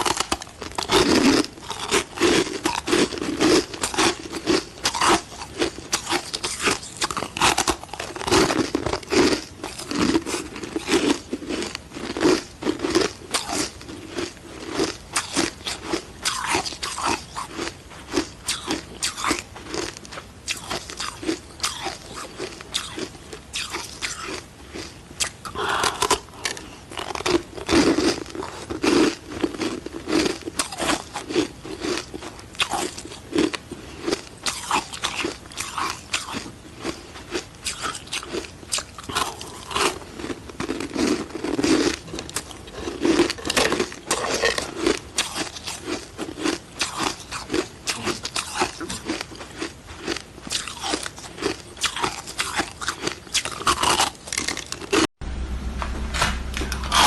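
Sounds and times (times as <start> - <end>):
ice being crunched by teeth: 0.0 - 17.7, 37.6 - 55.0.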